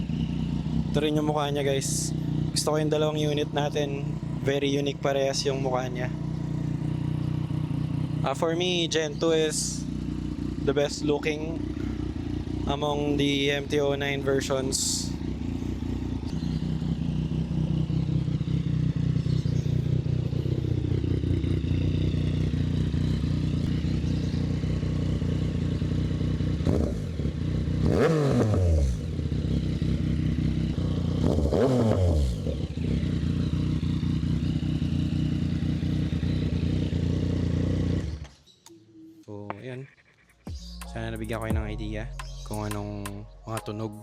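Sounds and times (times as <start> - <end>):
motorcycle engine idling and revving: 0.0 - 44.0.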